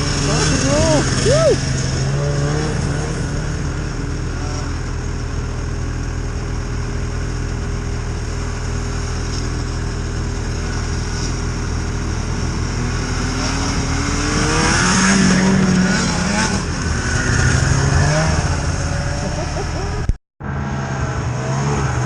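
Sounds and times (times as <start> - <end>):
snowmobile engine running: 0.0 - 22.0.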